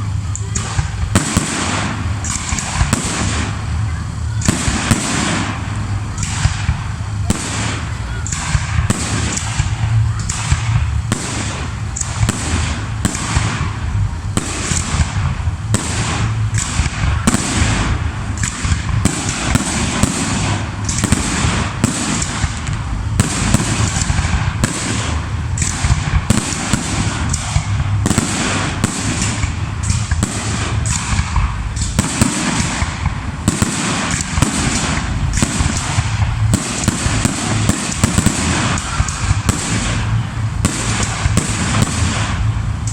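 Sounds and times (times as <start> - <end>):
firework shells bursting: 0.0 - 42.9
low rumble: 0.0 - 42.9.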